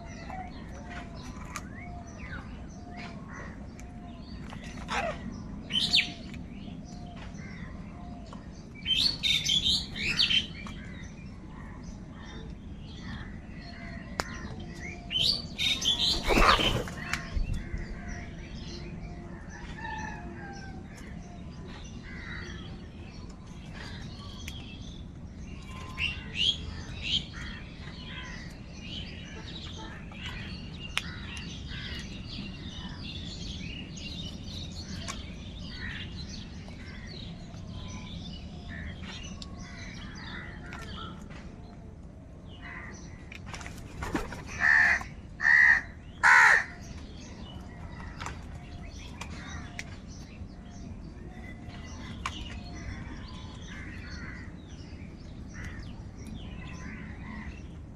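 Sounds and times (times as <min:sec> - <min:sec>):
crows calling: 0:44.5 - 0:47.0, 0:53.6 - 0:54.6.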